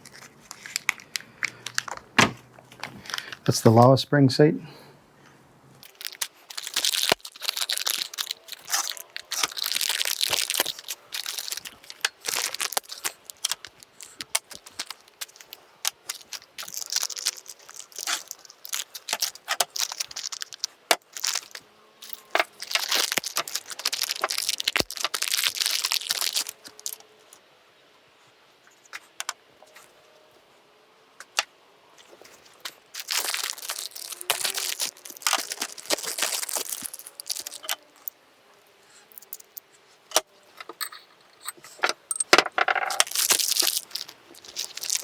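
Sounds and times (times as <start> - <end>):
packaging crinkling and rustling: 0.0 - 3.5, 5.8 - 27.4, 32.0 - 38.1, 38.9 - 40.8, 42.7 - 45.0.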